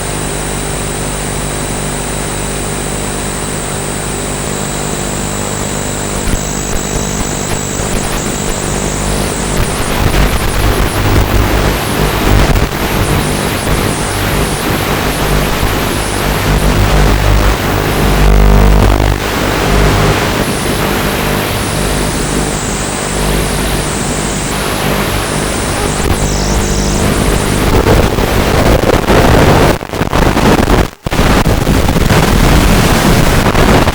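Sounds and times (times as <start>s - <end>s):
quadcopter motors whining: 4.0s - 18.7s, 19.3s - 27.9s.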